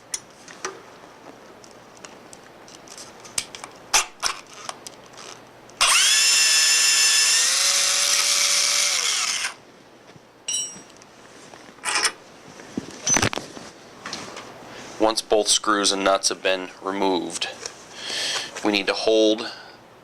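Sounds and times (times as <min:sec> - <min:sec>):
cordless drill motor whine: 0:05.8 - 0:09.6
metallic clink: 0:10.5 - 0:10.9.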